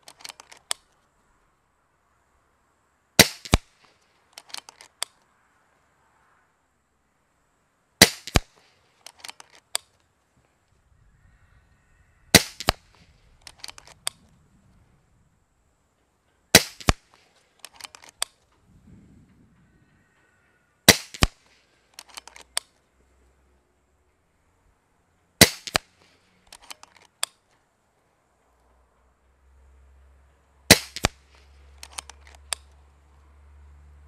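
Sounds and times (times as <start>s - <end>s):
rifle action clicks: 0.0s - 1.0s, 3.2s - 5.3s, 8.0s - 10.0s, 12.3s - 14.3s, 16.6s - 18.5s, 20.9s - 22.8s, 25.4s - 27.6s, 30.7s - 32.8s
air rifle shots cracking: 3.2s - 4.9s, 8.0s - 9.5s, 12.3s - 14.2s, 16.5s - 18.4s, 20.8s - 22.7s, 25.4s - 26.8s, 30.7s - 32.6s.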